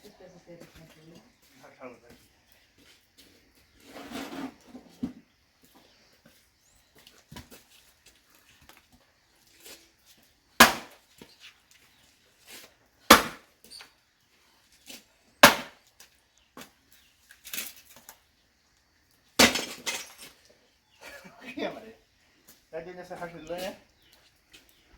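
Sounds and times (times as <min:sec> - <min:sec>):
axe chopping firewood: 0:10.6 - 0:11.0, 0:13.1 - 0:13.5, 0:15.4 - 0:15.8, 0:19.4 - 0:20.3.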